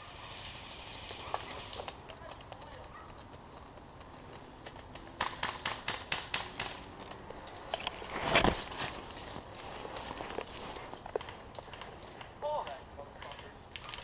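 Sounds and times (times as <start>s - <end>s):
footsteps crunching through dry leaves: 6.7s - 11.2s.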